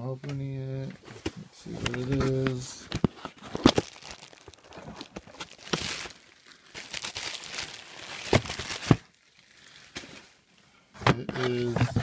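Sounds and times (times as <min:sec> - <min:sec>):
packaging crinkling and tearing: 0:01.7 - 0:10.2.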